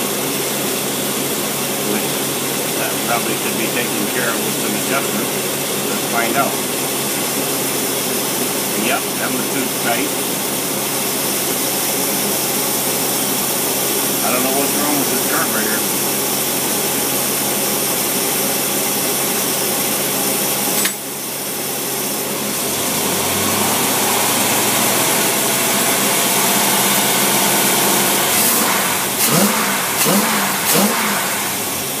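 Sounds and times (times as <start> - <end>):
engine running and revving: 22.5 - 32.0.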